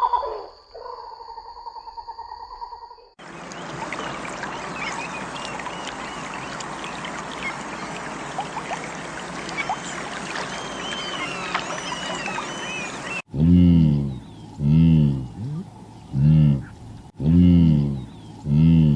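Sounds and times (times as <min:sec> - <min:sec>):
small birds chirping: 0:03.0 - 0:18.9
steady rush like running water: 0:03.2 - 0:13.3.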